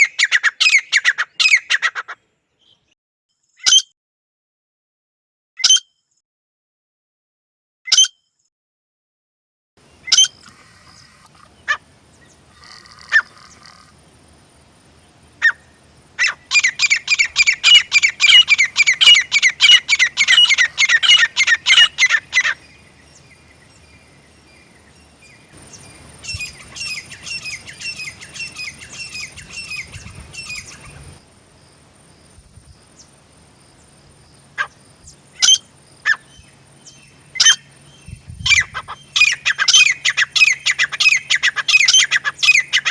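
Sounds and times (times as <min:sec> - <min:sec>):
francolin calling: 0:09.8 - 0:31.3, 0:32.2 - 0:42.9.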